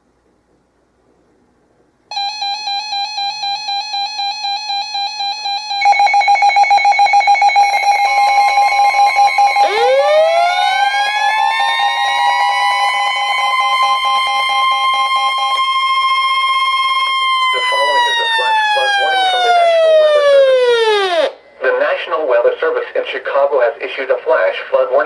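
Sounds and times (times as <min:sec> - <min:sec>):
steady alarm tone: 0:02.1 - 0:21.5
siren-like sweeping tone: 0:05.4 - 0:21.4.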